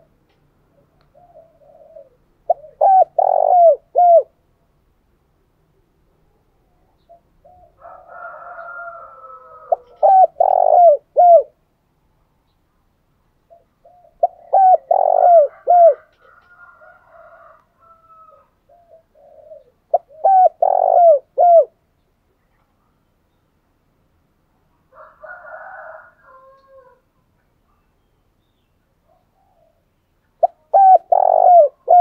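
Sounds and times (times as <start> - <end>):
dove cooing: 0.7 - 4.4, 6.9 - 11.6, 13.5 - 21.8, 29.1 - 29.8, 30.4 - 32.0.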